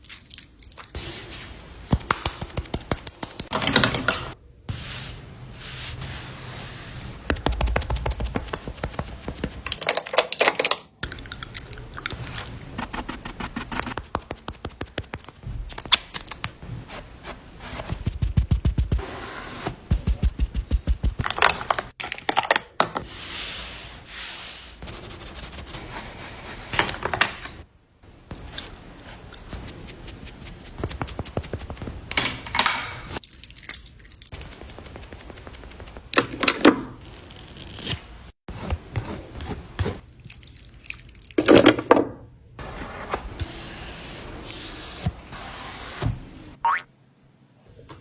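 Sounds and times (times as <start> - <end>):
scraping and rubbing sweeps: 4.7 - 7.3.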